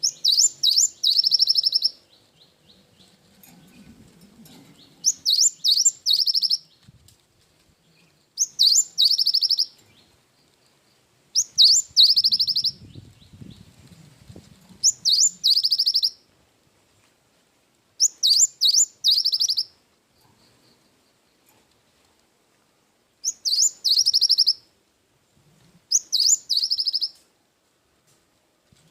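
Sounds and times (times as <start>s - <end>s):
bird singing with trills: 0.0s - 3.1s, 4.8s - 6.8s, 8.0s - 10.1s, 11.4s - 13.6s, 14.8s - 16.2s, 18.0s - 19.7s, 23.2s - 24.6s, 25.9s - 27.2s.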